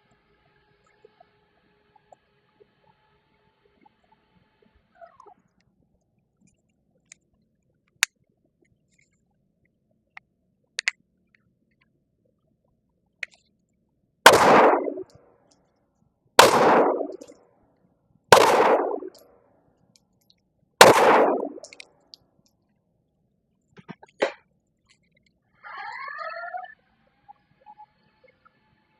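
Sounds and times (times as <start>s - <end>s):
pistol shots: 14.3s - 15.0s, 16.4s - 17.4s, 18.3s - 19.2s, 20.8s - 21.8s.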